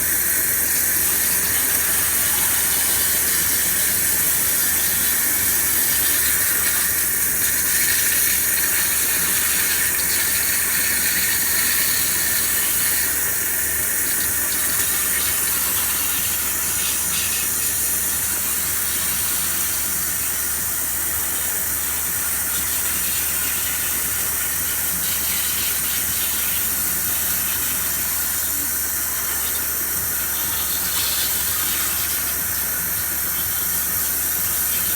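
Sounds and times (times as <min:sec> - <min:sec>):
machine cutting steel: 0:00.0 - 0:19.9.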